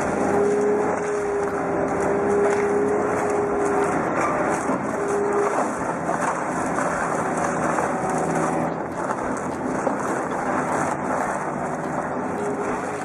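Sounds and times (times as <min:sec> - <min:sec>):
heavy machinery running: 0:00.0 - 0:13.0.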